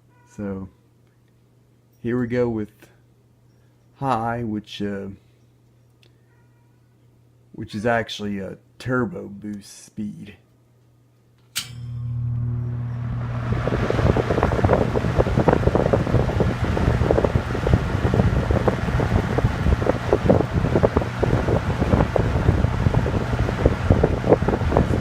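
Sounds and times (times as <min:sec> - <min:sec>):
fan motor hum: 0:11.6 - 0:25.0
air rush buffeting microphone: 0:12.4 - 0:25.0.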